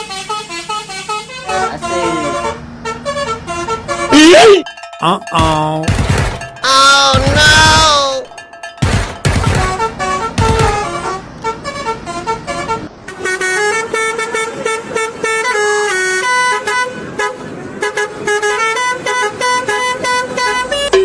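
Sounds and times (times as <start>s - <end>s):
multi-tone air horn melody: 0.0s - 4.7s, 9.5s - 21.0s
low thuds: 5.4s - 8.1s, 8.8s - 11.0s.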